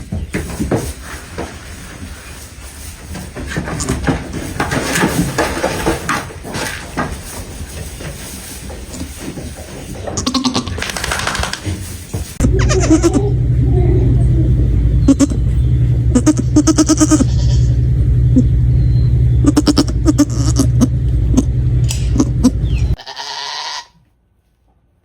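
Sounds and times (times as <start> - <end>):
baby goats bleating: 3.7 - 4.2, 10.1 - 11.7, 12.4 - 17.8, 19.4 - 24.0.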